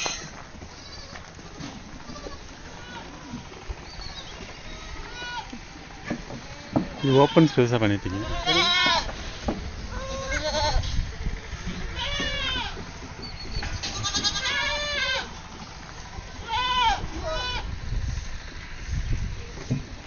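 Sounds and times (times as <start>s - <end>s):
goats bleating: 0.0s - 5.6s, 6.3s - 11.0s, 11.6s - 13.0s, 13.8s - 17.7s.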